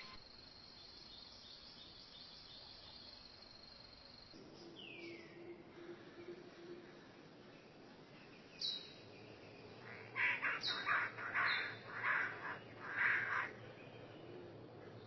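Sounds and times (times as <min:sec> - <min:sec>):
harsh raspy bird calls: 0:09.8 - 0:13.7.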